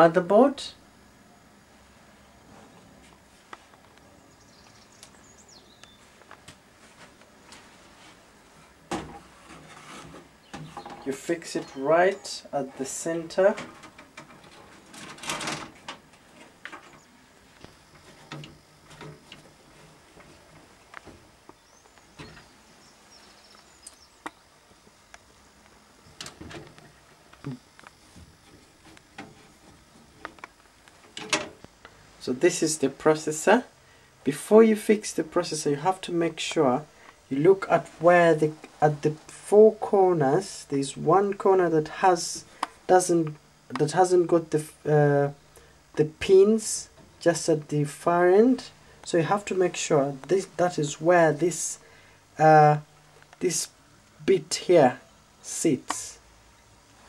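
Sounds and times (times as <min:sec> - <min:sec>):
computer parts clicking and knocking: 0:13.4 - 0:16.0, 0:31.1 - 0:31.6.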